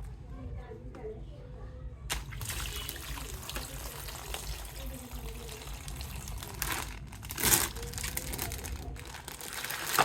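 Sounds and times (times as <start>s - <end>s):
plastic packaging crinkling: 3.5s - 10.0s.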